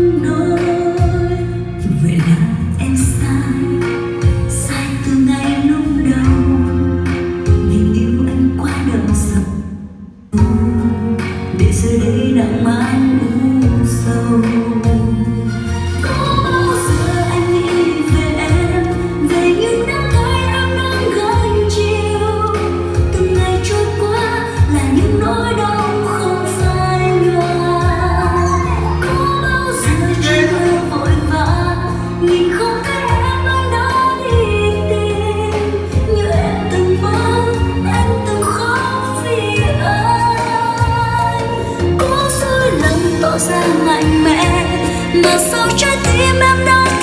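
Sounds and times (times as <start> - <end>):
woman singing pop song: 0.0 - 47.0
sustained bass notes: 13.3 - 43.4.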